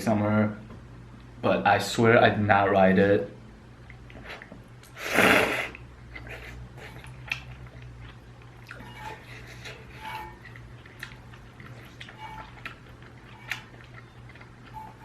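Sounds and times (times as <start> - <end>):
chewing with wet mouth clicks: 3.8 - 5.0, 6.1 - 8.8, 9.8 - 15.0
loud noodle slurp: 4.2 - 7.0.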